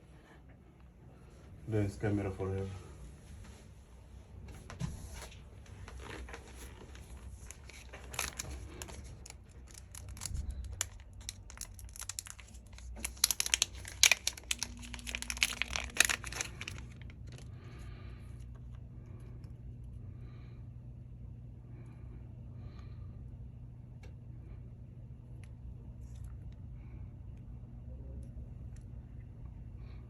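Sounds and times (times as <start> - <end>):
plastic film crinkling and tearing: 5.7 - 17.6.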